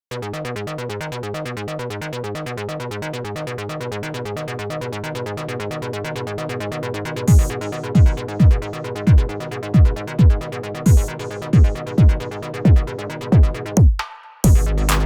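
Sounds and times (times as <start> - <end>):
synthesizer sequenced pattern: 7.2 - 15.0.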